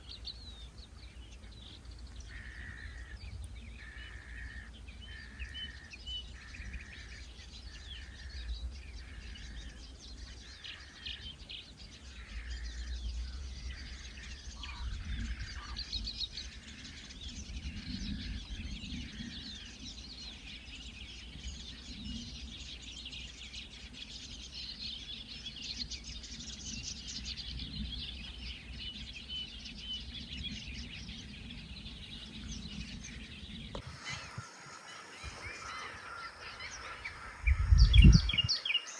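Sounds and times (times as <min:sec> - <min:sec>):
small birds chirping and twittering: 0:00.0 - 0:38.9
steady low rumble: 0:30.0 - 0:38.5.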